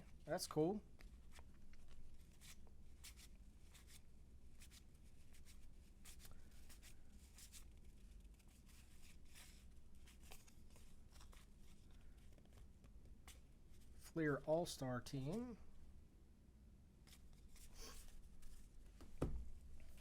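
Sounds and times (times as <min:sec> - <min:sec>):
cards sliding rustles: 0:01.0 - 0:04.0, 0:04.6 - 0:14.2, 0:17.1 - 0:19.1.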